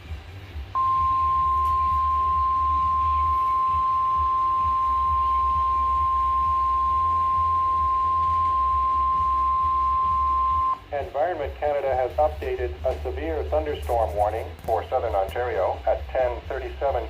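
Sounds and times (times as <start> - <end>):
steady alarm tone: 0.7 - 11.0.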